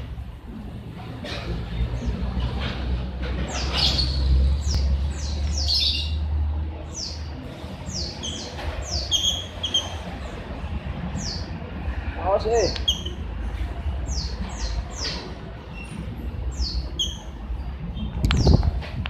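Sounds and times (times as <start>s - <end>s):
bird chirping: 3.5s - 6.3s, 7.9s - 10.0s, 12.6s - 13.2s, 16.5s - 17.4s.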